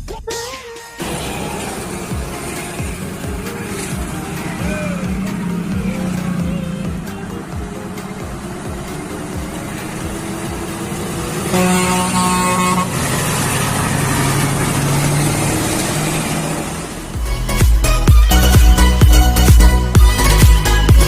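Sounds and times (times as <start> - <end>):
electronic music with heavy beat: 0.0 - 11.4, 17.2 - 21.0
heavy truck running: 1.0 - 21.0
air horn blowing: 11.2 - 14.4.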